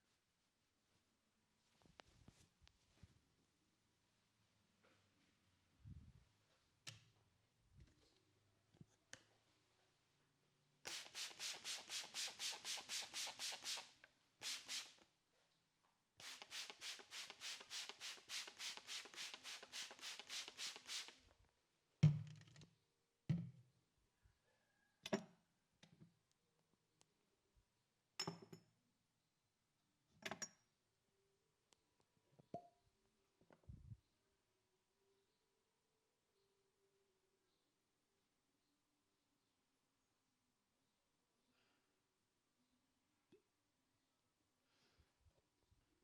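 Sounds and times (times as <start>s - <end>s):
hands rubbing a face: 10.9s - 15.0s, 16.2s - 21.2s.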